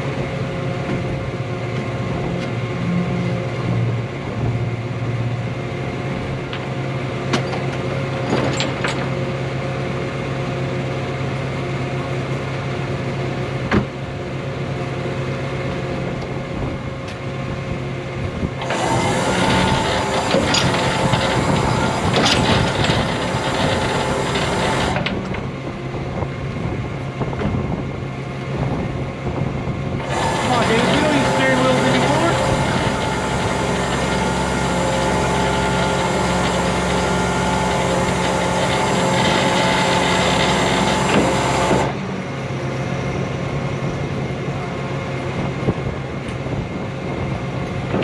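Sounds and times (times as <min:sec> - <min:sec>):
vehicle engine running: 0:30.0 - 0:42.0.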